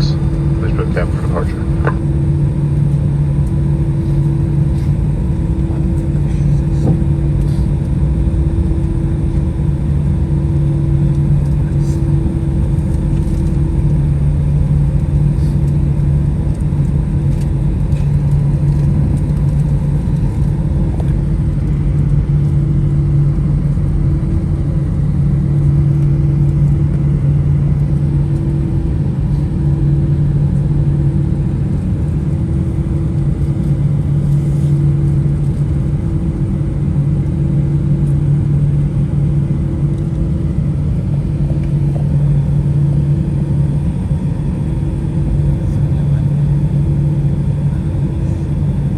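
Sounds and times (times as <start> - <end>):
airplane cabin engine drone: 0.0 - 48.9
low hum: 0.0 - 48.9.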